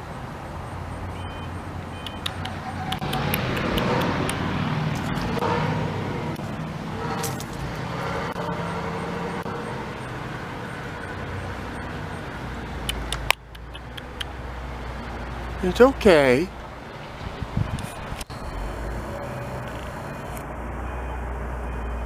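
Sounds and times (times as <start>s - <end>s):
road vehicle passing by: 0.0s - 22.0s
sharp clicks: 2.0s - 4.4s, 12.8s - 14.4s.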